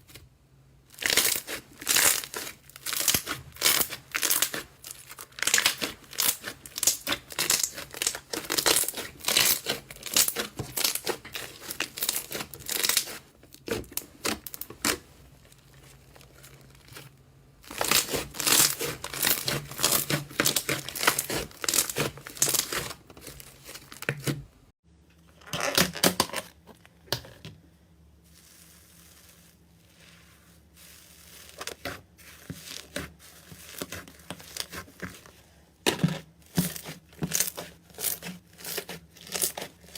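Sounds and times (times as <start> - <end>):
slime crackling and popping: 0.9 - 24.3, 36.6 - 39.9.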